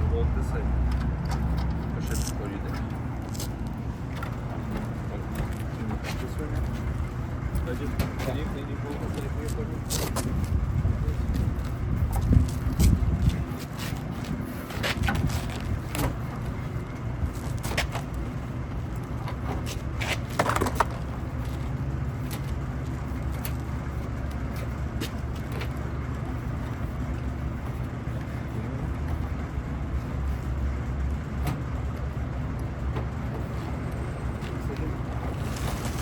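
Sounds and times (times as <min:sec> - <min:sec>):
low mechanical drone: 0:00.0 - 0:36.0.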